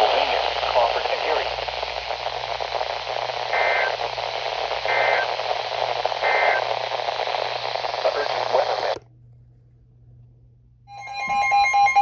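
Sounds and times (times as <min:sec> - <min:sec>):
two-tone data bursts: 0:00.0 - 0:08.9
radio static: 0:00.0 - 0:09.0.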